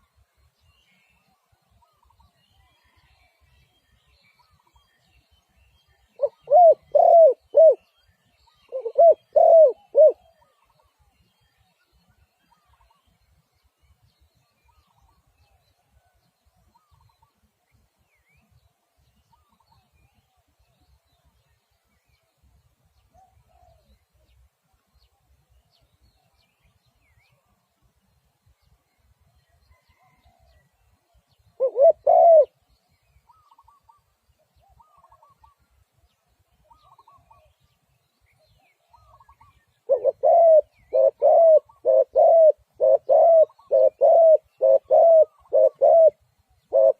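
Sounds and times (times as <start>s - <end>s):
small birds chirping: 0.0s - 46.9s
dove cooing: 6.2s - 7.9s, 8.6s - 10.9s, 31.6s - 32.5s, 38.9s - 46.9s.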